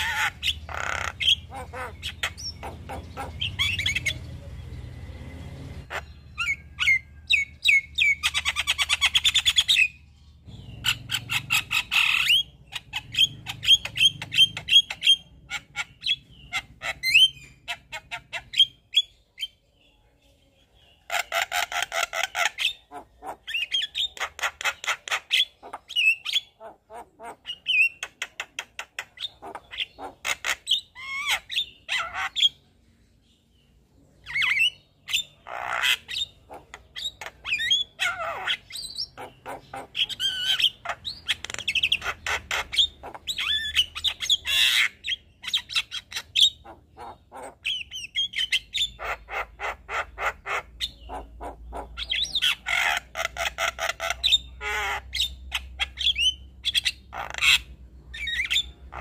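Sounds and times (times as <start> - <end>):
bird singing rattling and whistling: 0.0 - 4.3, 5.8 - 19.6, 34.2 - 59.0.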